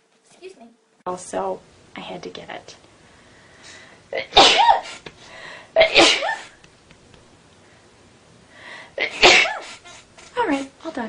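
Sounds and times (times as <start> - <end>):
woman sneezing: 4.2 - 5.0, 5.8 - 6.6, 9.0 - 9.8.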